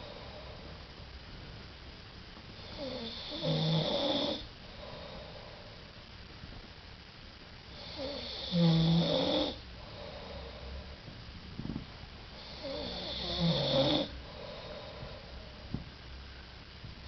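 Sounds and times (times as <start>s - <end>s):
man snoring: 2.6s - 5.2s, 7.8s - 10.2s, 12.4s - 14.8s.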